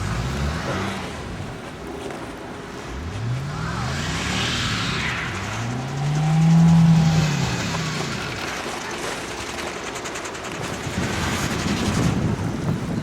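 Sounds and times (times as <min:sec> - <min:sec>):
car engine revving: 0:00.0 - 0:01.6, 0:02.7 - 0:09.7
wheels spinning in snow: 0:00.0 - 0:13.0.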